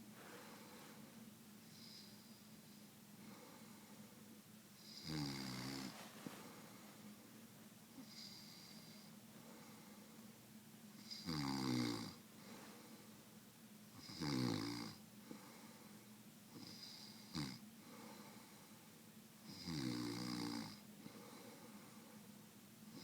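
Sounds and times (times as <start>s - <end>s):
person snoring: 4.8s - 6.0s.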